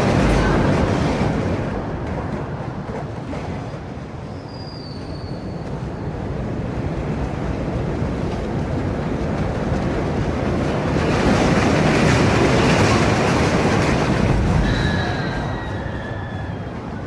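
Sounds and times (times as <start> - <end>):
roller coaster rumbling on track: 0.0 - 17.0
high-pitched squeal: 14.4 - 16.7.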